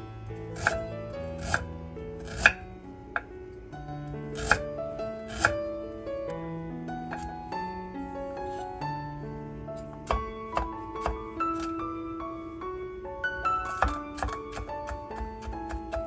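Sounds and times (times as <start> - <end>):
soft piano music: 0.0 - 16.0
knife chopping on cutting board: 0.6 - 0.8, 1.4 - 2.6, 4.4 - 4.6, 5.2 - 5.6, 7.1 - 7.3, 9.8 - 11.8, 13.4 - 16.0.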